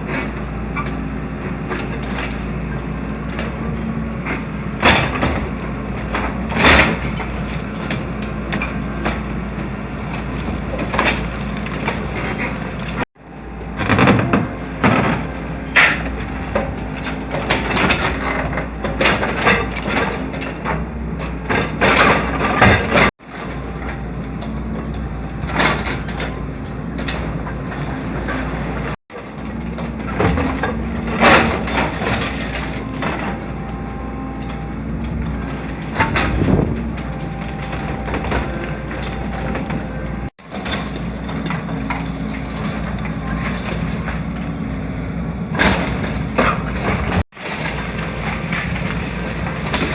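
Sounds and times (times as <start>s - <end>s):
excavator engine running: 0.0s - 49.9s
debris crunching and crashing: 25.4s - 49.9s.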